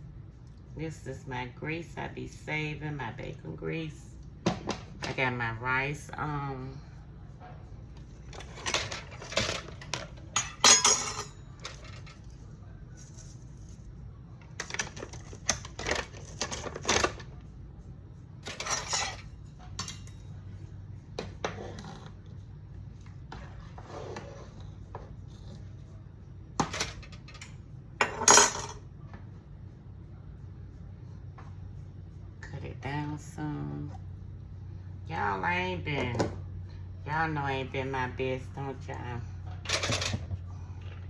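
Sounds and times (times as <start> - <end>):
steady low hum: 0.0 - 41.0
pots and utensils clattering: 8.3 - 12.2, 18.4 - 20.2, 26.6 - 28.8, 39.6 - 40.4.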